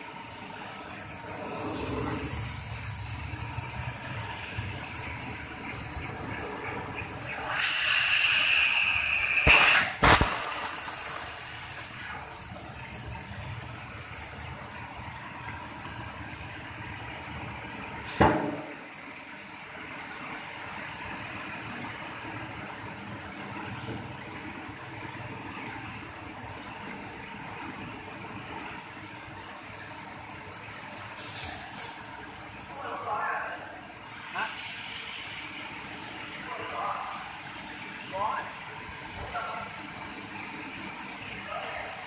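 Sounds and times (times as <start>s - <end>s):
laser cutter air jet hiss: 0.0s - 20.0s, 28.8s - 42.0s
sharp knocks: 18.2s - 18.7s.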